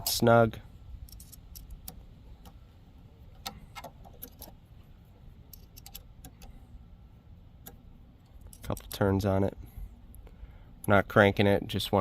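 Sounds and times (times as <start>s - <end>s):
allen key clicking in set screw: 1.0s - 2.6s, 3.4s - 4.6s, 5.5s - 6.5s.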